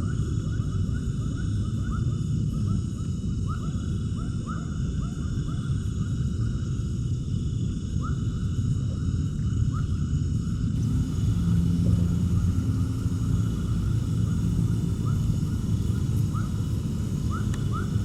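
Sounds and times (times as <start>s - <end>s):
low rumble: 10.8s - 18.0s.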